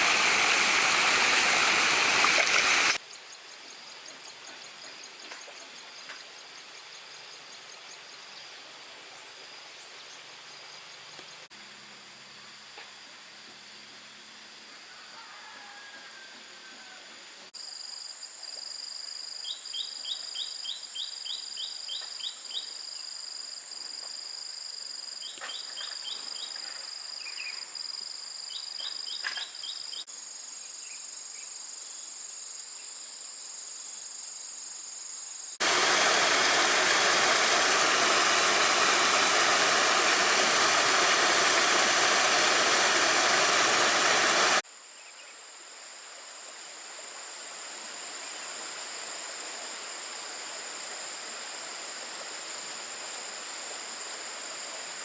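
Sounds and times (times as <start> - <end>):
loud even rushing noise: 35.6 - 44.6.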